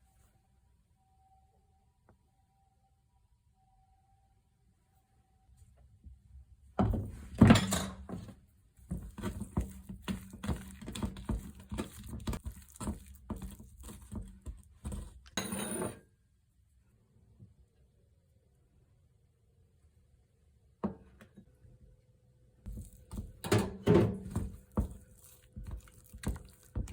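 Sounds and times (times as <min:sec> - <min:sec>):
utensils and dishes clattering: 0:07.4 - 0:08.2.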